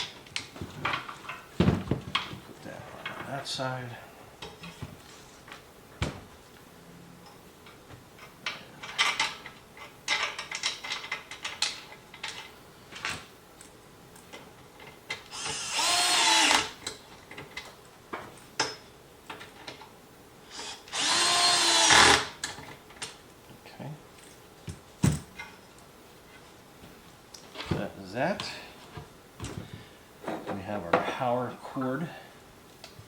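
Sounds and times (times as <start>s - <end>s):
furniture parts clicking and knocking: 0.0s - 3.4s, 24.2s - 25.6s
cordless drill driving a bolt: 15.3s - 16.8s, 20.5s - 22.4s.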